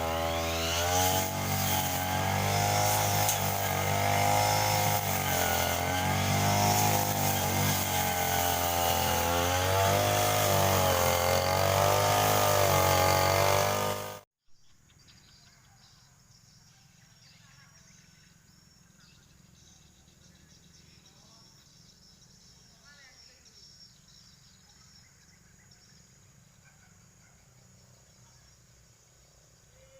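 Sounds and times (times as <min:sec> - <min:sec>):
brush cutter engine running: 0:00.0 - 0:14.2
insects chirping: 0:17.7 - 0:29.9.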